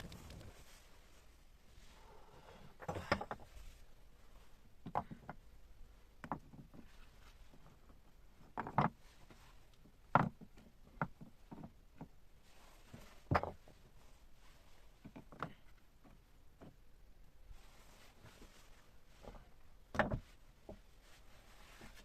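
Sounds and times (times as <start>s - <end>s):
faint steady background noise: 0.0s - 22.0s
knocks of objects being handled: 19.2s - 20.8s.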